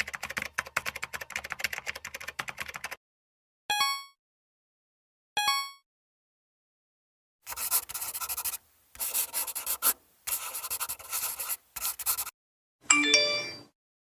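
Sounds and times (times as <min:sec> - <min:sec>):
scratchy rubbing strokes: 0:07.5 - 0:12.3
bright tinkling chime: 0:12.9 - 0:13.7.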